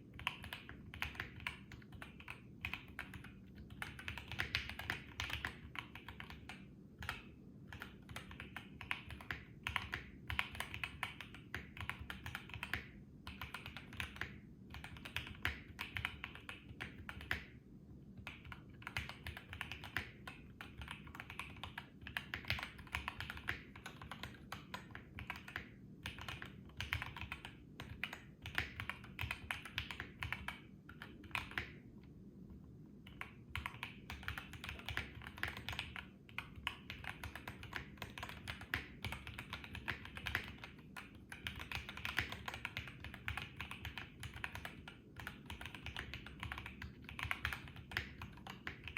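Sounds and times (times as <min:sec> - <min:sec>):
typing on mechanical keyboard: 0:00.0 - 0:17.6, 0:18.2 - 0:31.8, 0:33.0 - 0:48.9.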